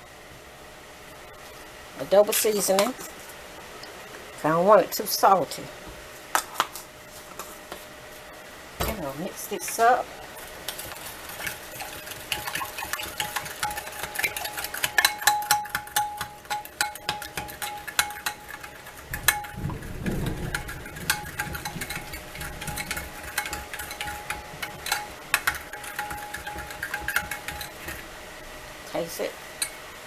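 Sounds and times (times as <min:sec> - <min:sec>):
utensil clicking against bowl: 0:11.4 - 0:19.6, 0:20.3 - 0:28.0.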